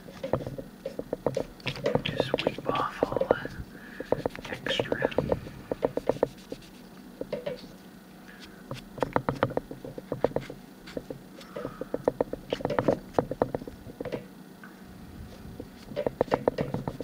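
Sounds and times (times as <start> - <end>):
scratchy rubbing on wood: 0.0 - 6.9, 15.6 - 17.0.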